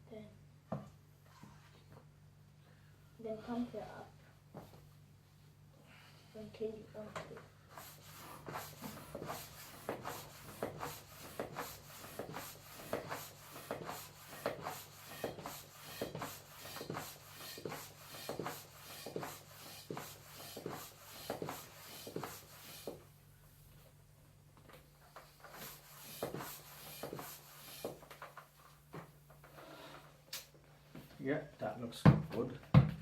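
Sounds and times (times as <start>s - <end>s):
hand pump strokes: 7.8s - 23.0s, 25.4s - 28.3s.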